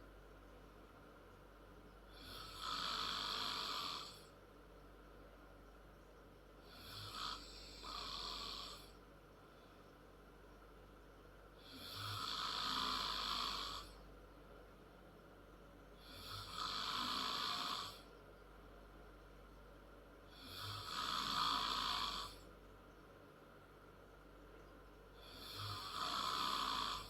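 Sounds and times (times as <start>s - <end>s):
quiet breaths: 0.0s - 27.0s
girl snoring: 2.2s - 4.2s, 11.6s - 14.0s, 16.0s - 18.1s, 20.4s - 22.4s, 25.2s - 27.0s.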